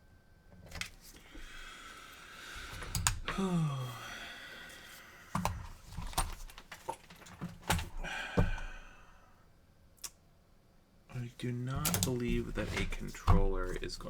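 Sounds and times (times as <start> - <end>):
sighing voiced hum: 3.2 - 4.9.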